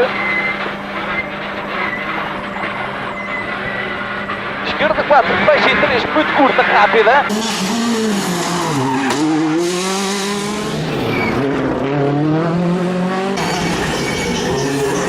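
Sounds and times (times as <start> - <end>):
tyre squeal: 0.0 - 4.9, 7.3 - 11.5, 13.4 - 15.0
rally car engine revving: 0.0 - 15.0.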